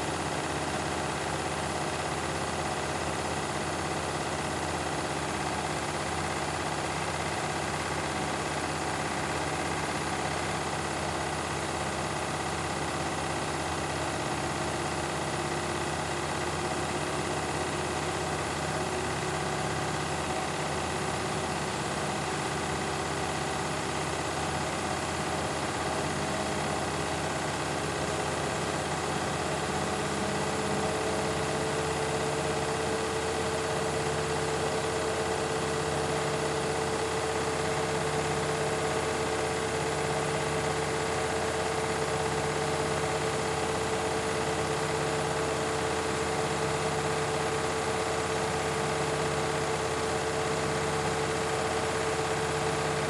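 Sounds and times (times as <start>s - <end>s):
washing machine spinning: 0.0s - 53.0s.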